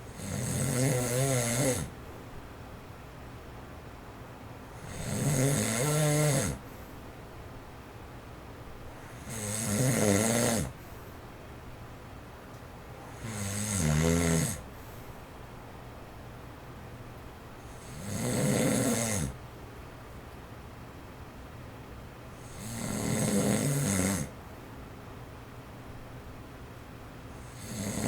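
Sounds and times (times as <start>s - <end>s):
electric fan running: 0.0s - 28.0s
man snoring: 0.1s - 1.9s, 4.8s - 6.6s, 9.0s - 10.8s, 13.1s - 14.6s, 17.7s - 19.4s, 22.4s - 24.3s, 27.4s - 28.0s.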